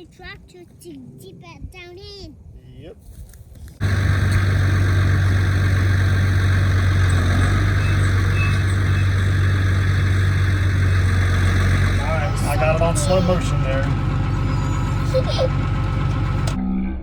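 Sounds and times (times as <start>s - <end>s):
tractor engine running: 3.8s - 16.6s.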